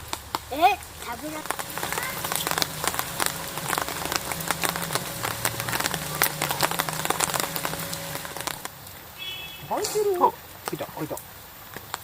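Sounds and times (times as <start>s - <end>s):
rain falling: 0.0s - 12.0s
low hum: 1.4s - 8.7s.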